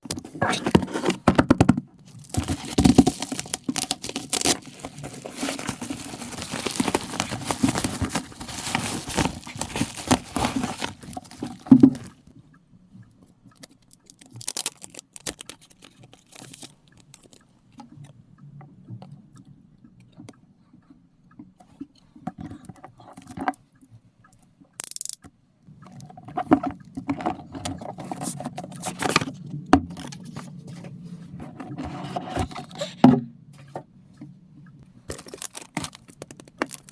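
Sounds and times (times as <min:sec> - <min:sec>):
packaging rustling and tearing: 0:00.1 - 0:12.2, 0:14.2 - 0:17.4, 0:27.7 - 0:30.5, 0:35.1 - 0:36.9.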